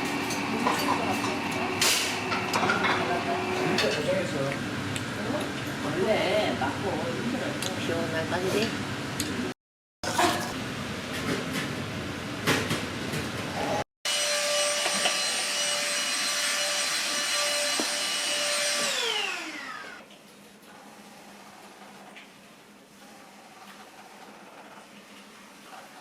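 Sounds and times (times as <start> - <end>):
appliance motor whining: 14.1 - 20.0.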